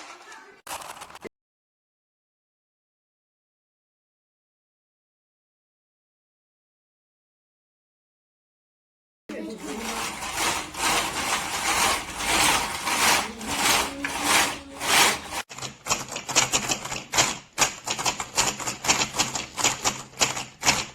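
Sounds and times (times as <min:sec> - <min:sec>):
plastic toy gears clattering: 0:00.0 - 0:01.3, 0:09.3 - 0:20.9.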